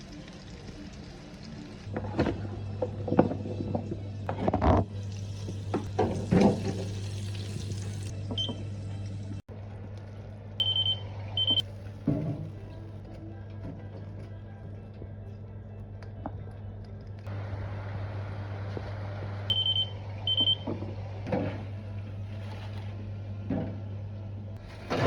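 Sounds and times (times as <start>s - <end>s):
short high electronic beeps: 19.5s - 20.6s.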